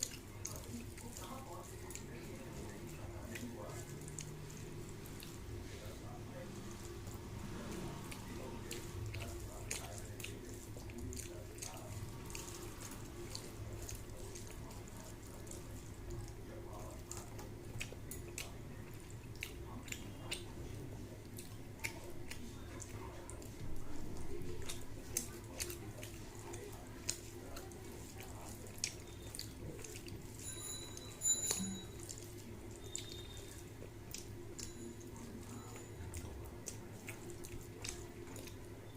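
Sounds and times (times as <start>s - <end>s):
wet eating sounds: 0.0s - 38.9s
ringing clink: 30.4s - 32.0s.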